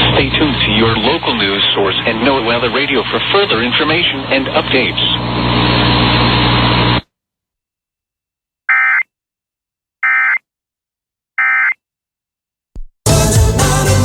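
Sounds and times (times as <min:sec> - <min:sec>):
steady broadcast hum: 0:00.0 - 0:07.0.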